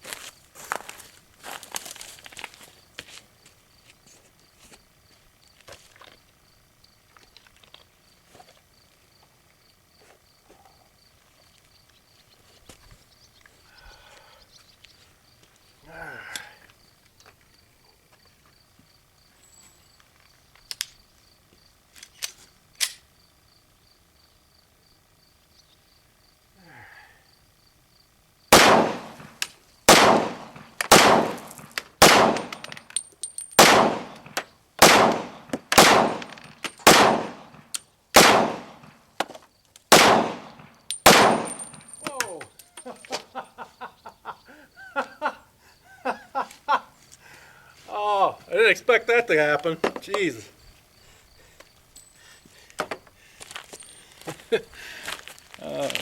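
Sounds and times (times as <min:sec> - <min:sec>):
handling clicks and rustles: 0:00.0 - 0:06.4, 0:30.4 - 0:34.5, 0:38.7 - 0:43.4
pistol shots: 0:28.5 - 0:32.7, 0:33.6 - 0:39.0, 0:39.9 - 0:42.0.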